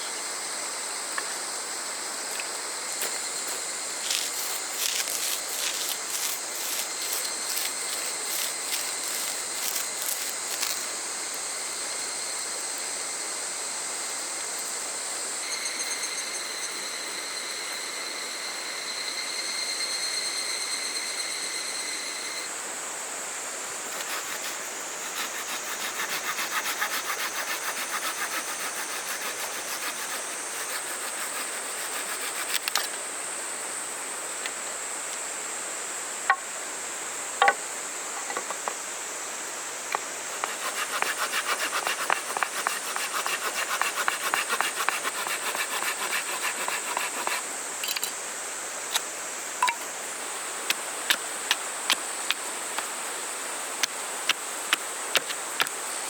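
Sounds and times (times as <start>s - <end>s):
cicadas droning: 0.0s - 56.0s
hand saw cutting wood: 4.0s - 10.8s, 23.9s - 32.9s, 40.3s - 47.5s.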